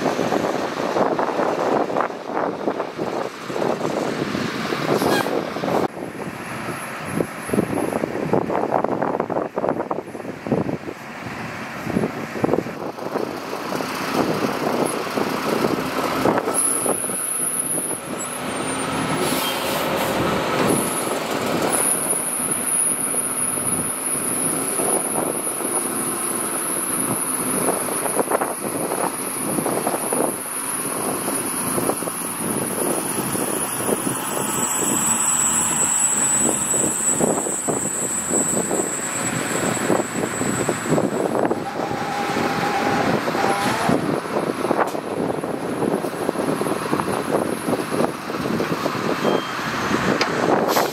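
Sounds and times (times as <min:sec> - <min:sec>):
diesel engine running under load: 0:00.0 - 0:50.9.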